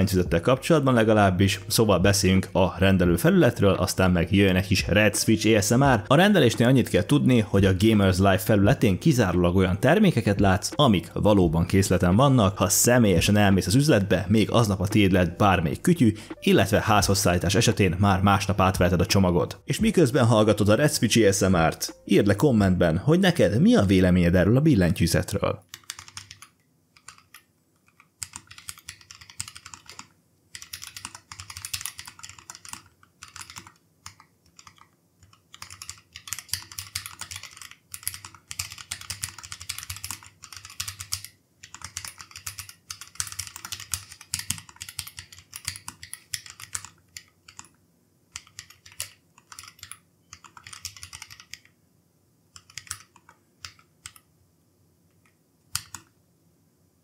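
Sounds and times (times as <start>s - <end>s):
mechanical keyboard typing: 0.0s - 22.7s, 25.2s - 51.7s, 52.5s - 54.3s, 55.7s - 56.1s.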